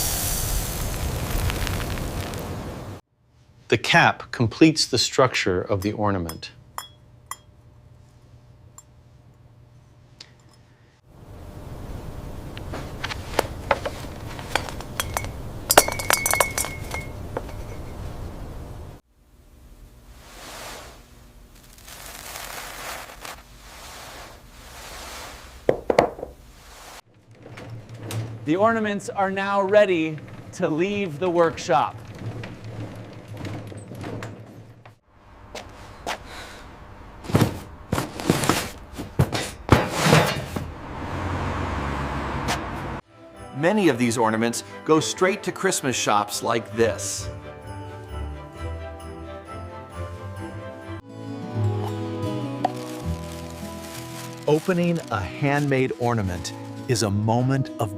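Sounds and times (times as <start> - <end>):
rustling: 12.6 - 18.3, 20.1 - 35.0, 52.4 - 57.2
glass ornaments clinking: 14.4 - 18.1.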